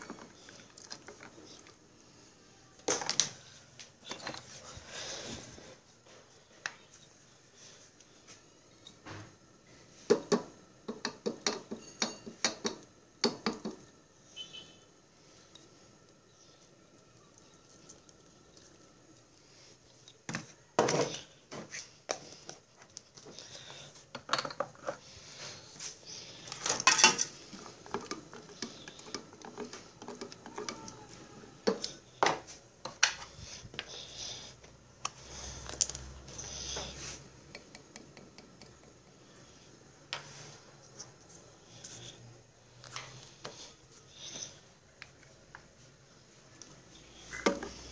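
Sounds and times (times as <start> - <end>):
dishes and cutlery clattering: 11.4 - 12.7, 26.6 - 28.4.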